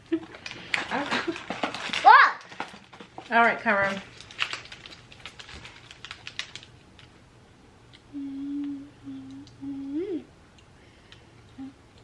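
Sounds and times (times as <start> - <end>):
snack packaging crackling: 0.2 - 7.2
person humming: 8.1 - 10.3, 11.5 - 11.8.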